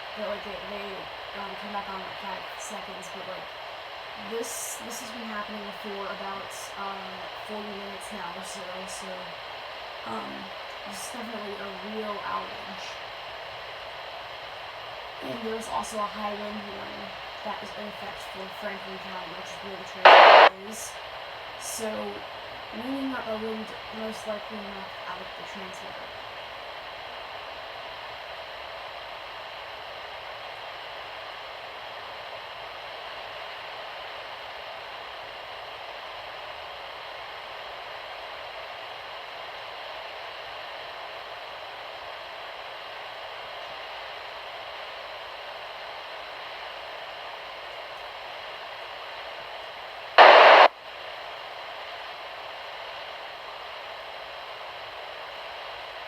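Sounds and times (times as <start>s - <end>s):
radio static hiss: 0.0s - 56.0s
loud burst of noise: 20.0s - 20.5s, 50.2s - 50.7s.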